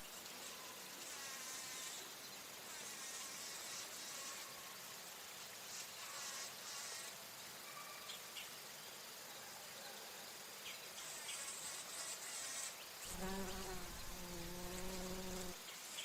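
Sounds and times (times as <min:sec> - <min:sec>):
faint background hiss: 0:00.0 - 0:16.0
bumblebee buzzing: 0:12.2 - 0:15.6.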